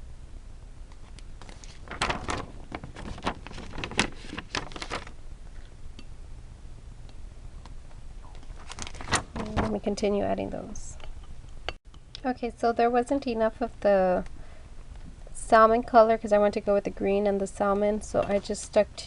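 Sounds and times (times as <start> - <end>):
paper rustling and tapping: 1.4 - 5.1, 8.4 - 9.8.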